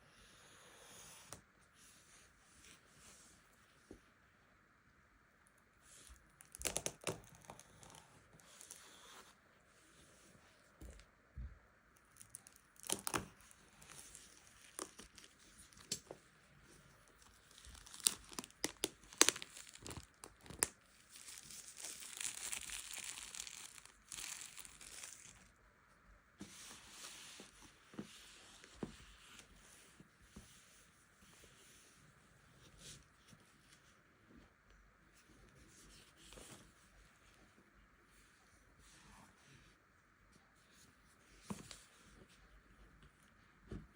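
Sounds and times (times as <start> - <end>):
plastic wrap and paper crinkling: 12.0 - 16.2, 17.0 - 25.6.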